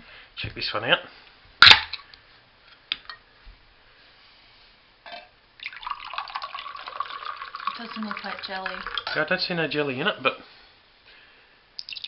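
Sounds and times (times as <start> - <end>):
drink pouring from can: 5.6 - 9.3, 11.8 - 12.0.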